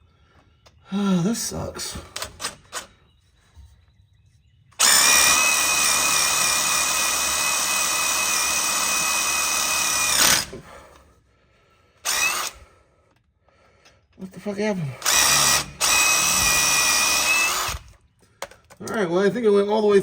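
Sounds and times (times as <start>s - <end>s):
electric drill whining: 4.8s - 10.8s, 12.0s - 12.7s, 15.0s - 18.0s.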